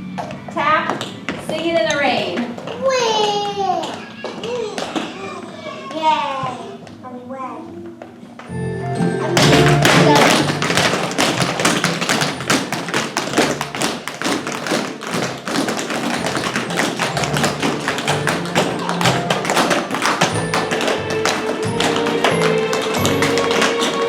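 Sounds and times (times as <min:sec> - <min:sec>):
music: 0:00.0 - 0:01.0, 0:08.4 - 0:24.0
tap shoes on floor: 0:00.2 - 0:05.2, 0:09.2 - 0:24.0.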